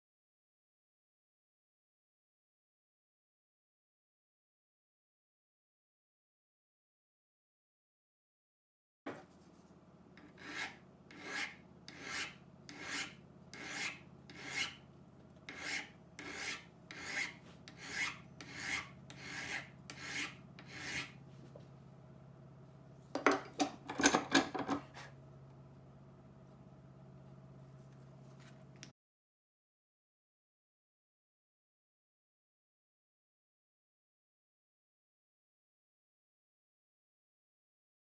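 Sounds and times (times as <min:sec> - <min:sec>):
abrasive filing strokes on metal: 0:10.2 - 0:14.8, 0:15.5 - 0:21.2.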